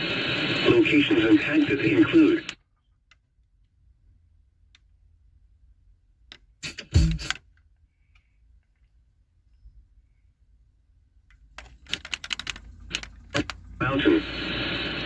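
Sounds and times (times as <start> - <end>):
sharp clicks: 11.6 - 13.6.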